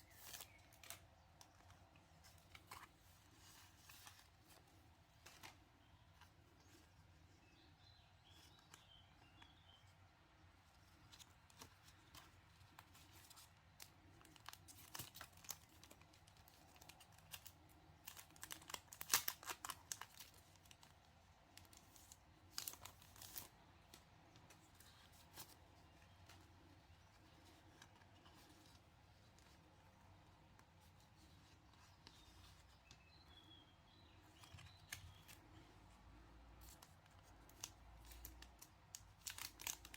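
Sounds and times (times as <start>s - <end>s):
faint bird chirps: 5.8s - 11.0s, 31.2s - 35.9s
packaging rustling and tearing: 13.8s - 20.9s, 37.5s - 39.9s.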